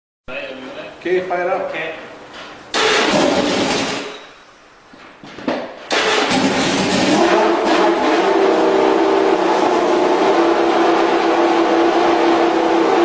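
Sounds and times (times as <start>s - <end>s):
car engine fast idle: 5.9s - 7.2s.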